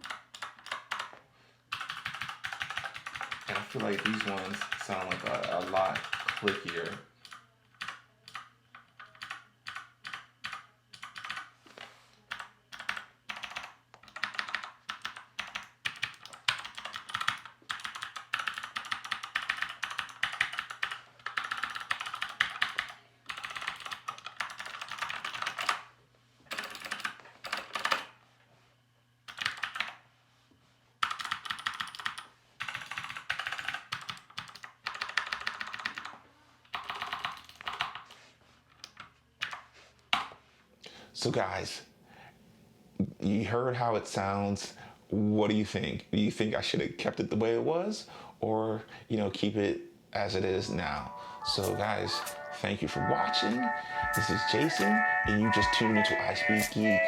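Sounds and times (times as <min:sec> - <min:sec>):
typing on mechanical keyboard: 0:00.0 - 0:11.5, 0:12.3 - 0:25.9, 0:26.5 - 0:28.1, 0:29.3 - 0:30.0, 0:31.0 - 0:36.1, 0:36.7 - 0:38.1, 0:38.8 - 0:40.3.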